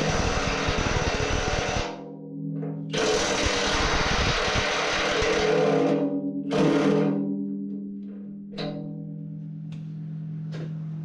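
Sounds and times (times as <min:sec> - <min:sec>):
power tool running: 0:00.0 - 0:02.0, 0:03.0 - 0:05.6.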